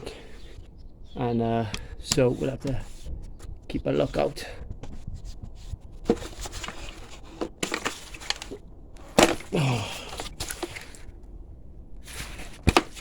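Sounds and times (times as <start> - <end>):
plastic parts clicking and creaking: 6.0 - 11.1.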